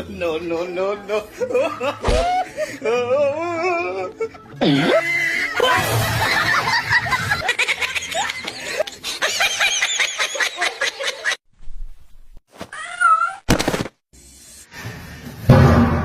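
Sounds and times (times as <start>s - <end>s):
music: 0.0s - 8.7s, 14.6s - 16.0s
people laughing: 1.1s - 11.4s.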